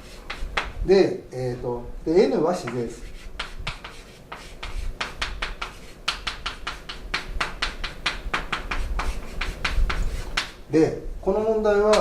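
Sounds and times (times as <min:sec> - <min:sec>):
pen scratching while writing: 0:03.0 - 0:10.5.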